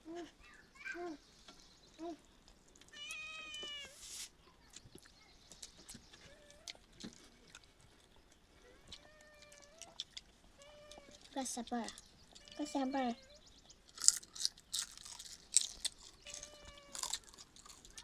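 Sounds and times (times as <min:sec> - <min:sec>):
cat meowing: 0:02.9 - 0:04.0, 0:10.6 - 0:11.3, 0:16.2 - 0:17.4.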